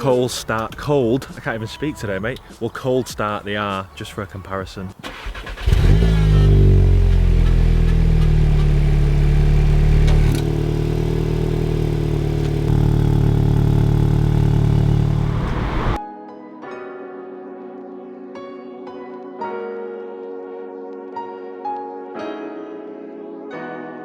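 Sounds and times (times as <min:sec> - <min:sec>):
car engine cold start and idle: 0:05.0 - 0:16.0.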